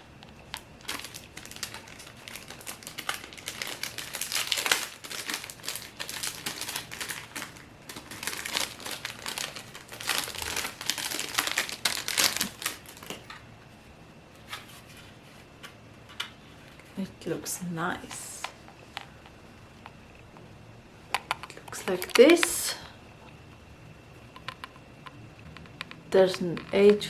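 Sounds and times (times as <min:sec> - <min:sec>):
packaging crinkling and rustling: 0:00.0 - 0:13.4.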